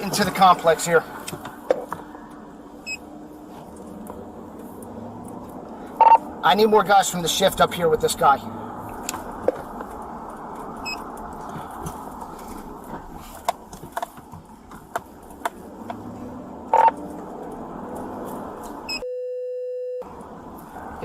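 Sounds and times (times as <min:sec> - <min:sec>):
steady single-pitch tone: 0:18.9 - 0:20.1.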